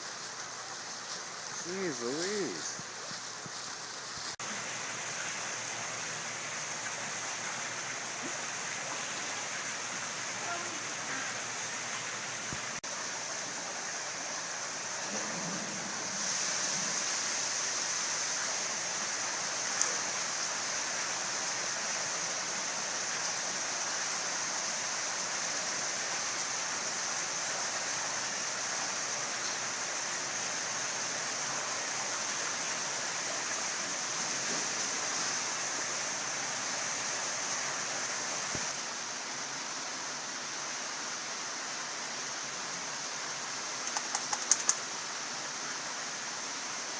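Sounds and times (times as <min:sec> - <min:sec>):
running splashing water: 0:00.0 - 0:24.4, 0:43.7 - 0:45.0
sharp click: 0:43.8 - 0:44.8.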